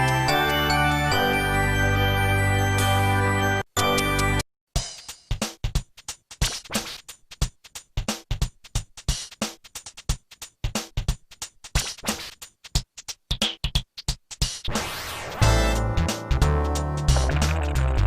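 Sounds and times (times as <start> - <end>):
phone ringtone drum-machine beat: 12.8 - 18.0.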